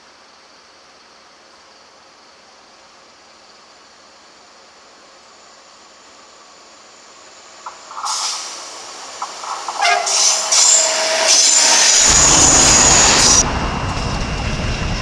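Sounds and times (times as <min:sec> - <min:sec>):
train wheels rumbling on rails: 0:07.2 - 0:15.0
train horn: 0:09.4 - 0:15.0.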